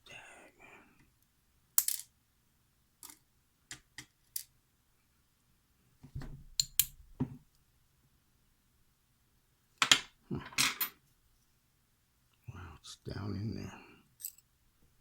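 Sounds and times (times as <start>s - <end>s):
metal lock parts clicking: 6.6s - 7.0s.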